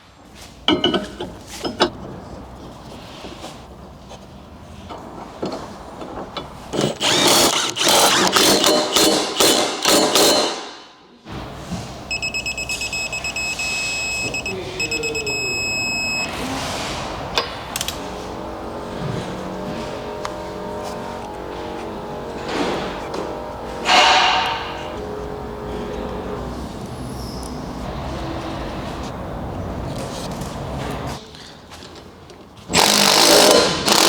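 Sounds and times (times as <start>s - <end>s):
torque wrench beeping: 12.0s - 16.4s.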